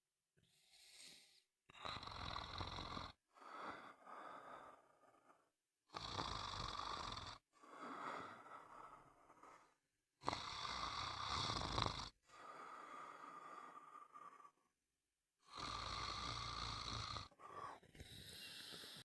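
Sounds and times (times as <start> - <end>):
soft breathing: 0.4 - 1.5, 3.4 - 5.5, 7.6 - 9.8, 12.3 - 14.7, 17.2 - 19.0
person snoring: 0.6 - 14.7, 15.4 - 19.0.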